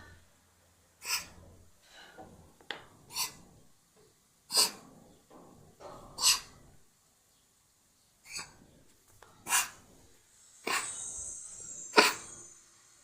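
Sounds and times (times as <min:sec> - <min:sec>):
cat coughing: 0:04.5 - 0:04.8, 0:10.7 - 0:11.0.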